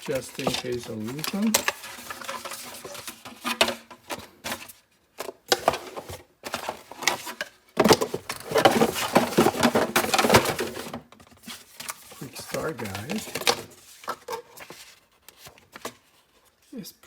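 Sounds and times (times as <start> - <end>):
packaging rustling: 0.0 - 16.5.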